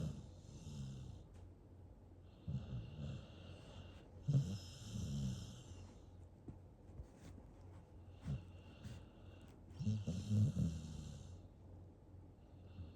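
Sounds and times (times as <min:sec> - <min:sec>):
puppy snoring: 0:00.0 - 0:01.2, 0:02.3 - 0:05.8, 0:09.8 - 0:11.4.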